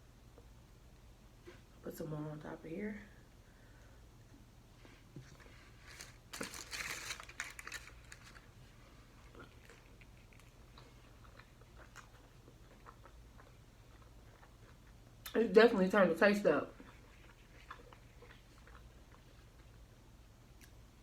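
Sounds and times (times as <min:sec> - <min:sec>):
food crunching: 0:05.8 - 0:15.4, 0:16.7 - 0:19.9
chewing with mouth clicks: 0:09.2 - 0:15.4, 0:16.7 - 0:20.9.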